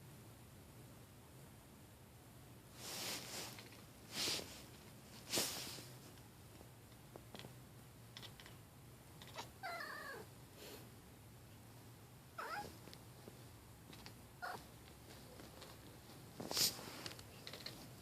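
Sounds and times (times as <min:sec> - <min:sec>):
cat making odd calls: 0:12.4 - 0:12.7.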